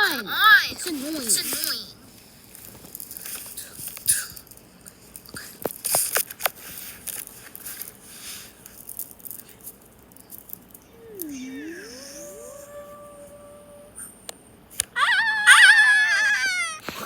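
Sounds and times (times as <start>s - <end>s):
plastic toy figures rustling: 0.7s - 11.7s.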